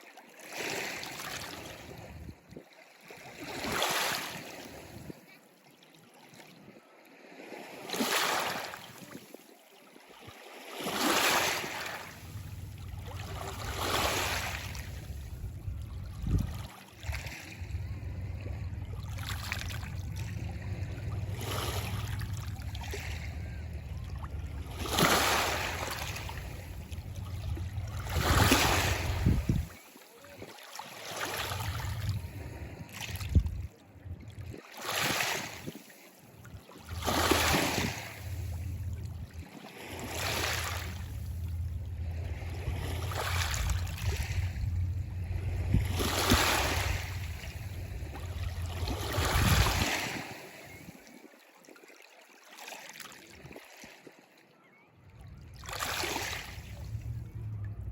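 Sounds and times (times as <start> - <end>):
small waves breaking on shore: 0.0 - 57.9
low rumble: 12.0 - 29.8, 31.3 - 34.6, 36.8 - 50.1, 55.1 - 57.9.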